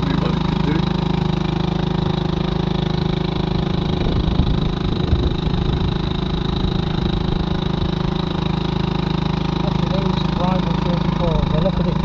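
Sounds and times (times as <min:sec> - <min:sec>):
wind buffeting microphone: 0:00.0 - 0:09.1
boat engine running at low revs: 0:00.0 - 0:12.0.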